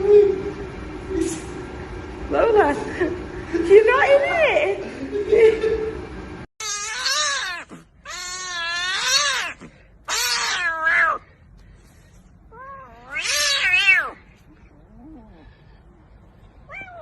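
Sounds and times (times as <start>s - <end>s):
cat yowling: 6.6s - 11.3s, 12.5s - 14.2s, 16.7s - 17.0s.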